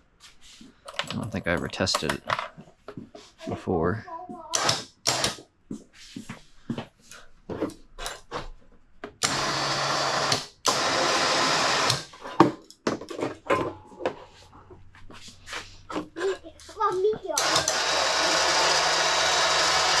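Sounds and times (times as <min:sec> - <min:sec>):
handling clicks and knocks: 0:00.9 - 0:02.7
small electric motor whirring: 0:09.2 - 0:12.1, 0:17.4 - 0:20.0.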